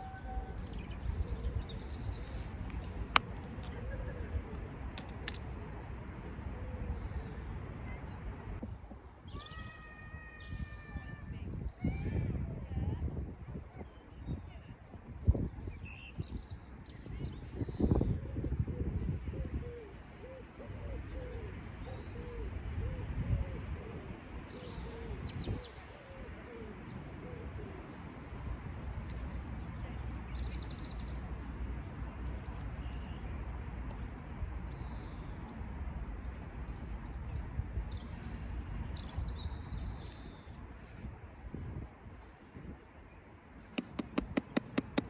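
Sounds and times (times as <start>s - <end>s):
small birds chirping: 43.0s - 45.0s.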